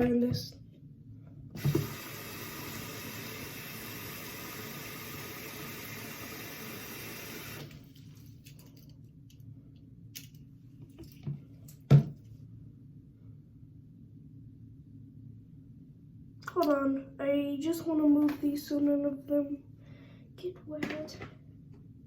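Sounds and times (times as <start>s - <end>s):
water running into a container: 1.6s - 7.9s.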